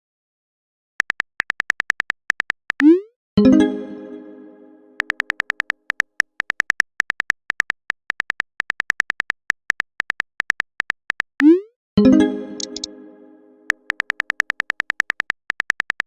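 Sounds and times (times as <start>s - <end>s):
phone keyboard tapping clicks: 1.0s - 2.9s, 5.0s - 11.5s, 12.6s - 12.9s, 13.7s - 16.0s
message tone chime: 2.9s - 5.1s, 11.5s - 13.8s.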